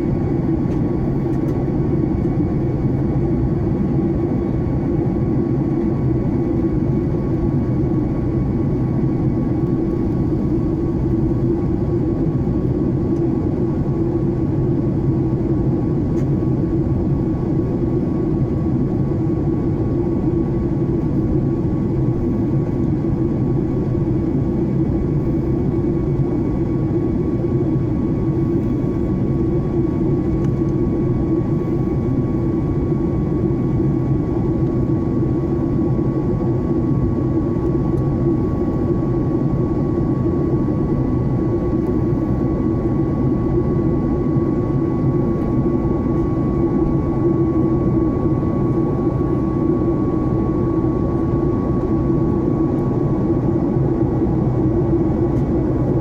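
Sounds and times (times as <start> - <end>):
faint steady whine: 0.0 - 56.0
jet engines droning: 0.0 - 56.0.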